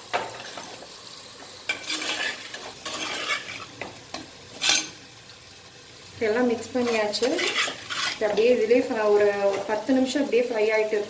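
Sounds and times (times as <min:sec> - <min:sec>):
light sizzle: 0:00.0 - 0:11.0
spoon scraping pan: 0:01.7 - 0:05.0, 0:06.6 - 0:08.7.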